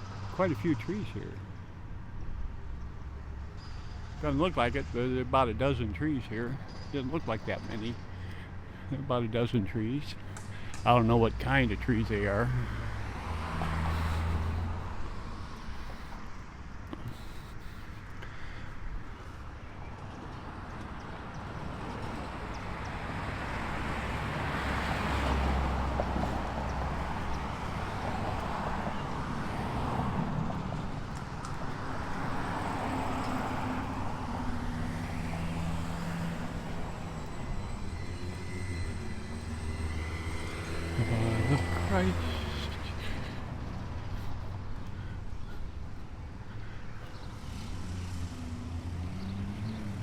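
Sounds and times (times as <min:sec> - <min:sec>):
vehicles driving past: 0:00.0 - 0:50.0.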